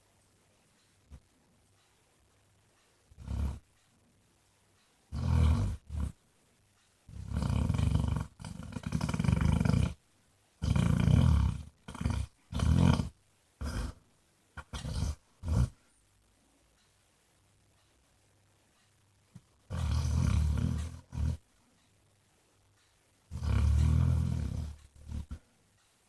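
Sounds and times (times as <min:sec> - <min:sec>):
dog snoring loudly: 0:03.1 - 0:03.6, 0:05.1 - 0:06.2, 0:07.1 - 0:10.0, 0:10.6 - 0:14.0, 0:14.6 - 0:15.8, 0:19.7 - 0:21.4, 0:23.3 - 0:25.4.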